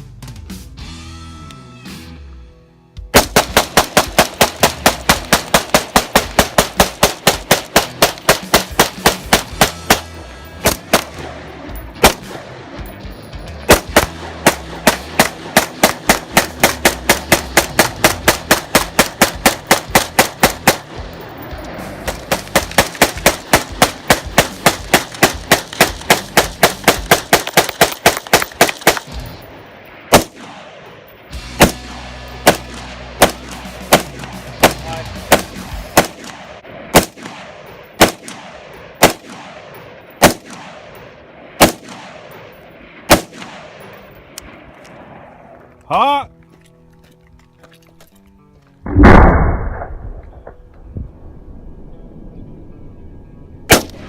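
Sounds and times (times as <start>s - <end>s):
semi-automatic gunfire: 3.1s - 11.4s, 12.0s - 12.5s, 13.7s - 21.0s, 22.1s - 29.4s, 30.1s - 45.3s, 53.7s - 54.0s.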